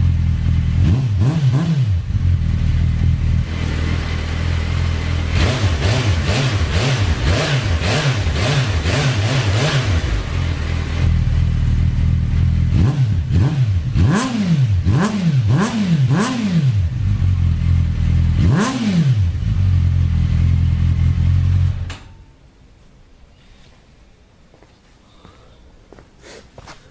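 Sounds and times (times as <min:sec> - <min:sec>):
motorcycle engine idling: 0:00.0 - 0:00.9, 0:02.0 - 0:09.0, 0:09.8 - 0:14.0, 0:16.8 - 0:18.5, 0:19.3 - 0:21.9
motorcycle engine revving: 0:00.0 - 0:22.0.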